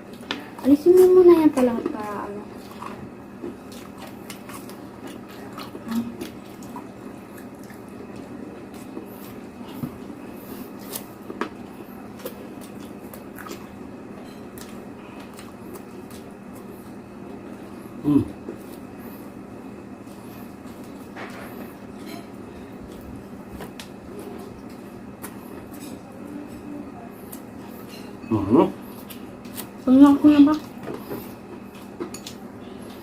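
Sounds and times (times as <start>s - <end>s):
steady background hum: 0.0s - 33.0s
wet chewing and mouth smacks: 2.6s - 9.8s, 10.8s - 13.8s.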